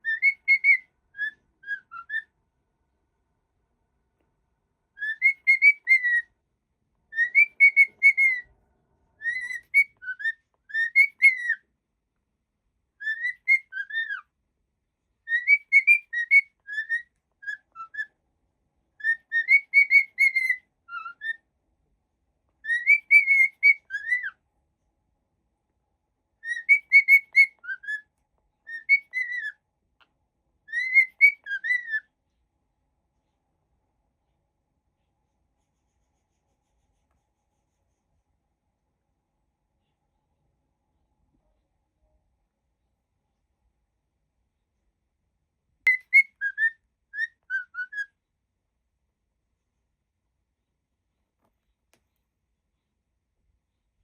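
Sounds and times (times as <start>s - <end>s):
cockatiel whistling a tune: 0.0s - 2.3s, 5.0s - 6.3s, 7.1s - 8.5s, 9.2s - 11.6s, 13.0s - 14.3s, 15.3s - 18.1s, 19.0s - 21.4s, 22.6s - 24.4s, 26.4s - 29.6s, 30.7s - 32.1s, 45.8s - 48.1s.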